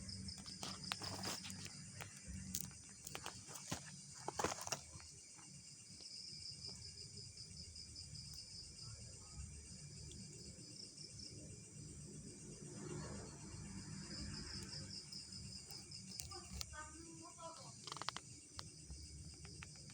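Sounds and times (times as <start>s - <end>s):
night insects trilling: 0.0s - 19.9s.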